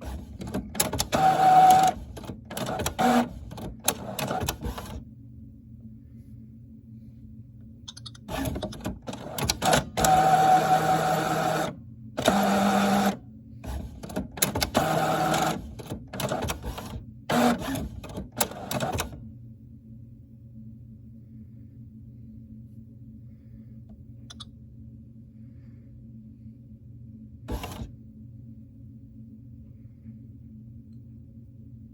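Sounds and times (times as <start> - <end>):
printer motor running: 0.0 - 5.0, 8.3 - 19.2, 27.5 - 28.0
low steady hum: 0.0 - 31.9
printer clicks: 0.1 - 5.0, 8.3 - 19.2, 27.5 - 27.9.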